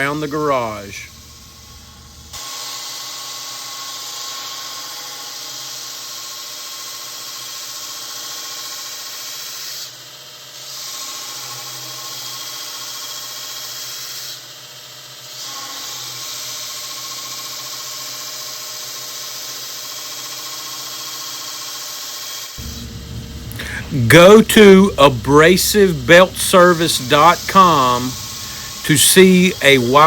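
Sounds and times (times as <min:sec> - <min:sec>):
belt sander grinding steel: 0:22.6 - 0:30.0
sander motor hum: 0:22.6 - 0:30.0.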